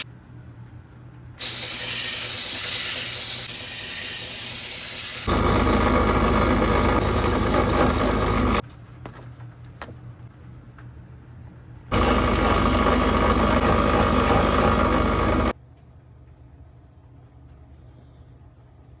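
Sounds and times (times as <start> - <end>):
power tool running: 1.4 - 8.6, 11.9 - 15.6.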